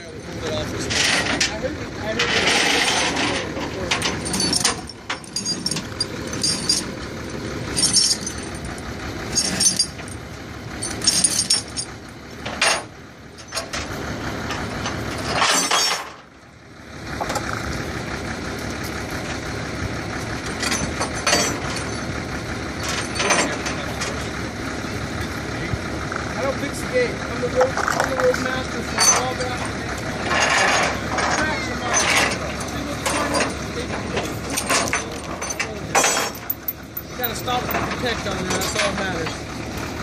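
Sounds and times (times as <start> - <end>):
vehicle engine running: 0.0 - 40.0.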